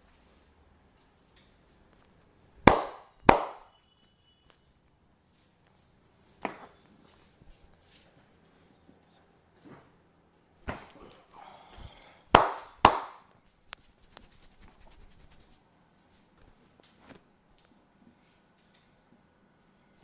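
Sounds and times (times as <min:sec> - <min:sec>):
hands slapping body: 0:02.7 - 0:03.7, 0:12.3 - 0:15.4
hands tapping and rubbing: 0:12.4 - 0:15.6.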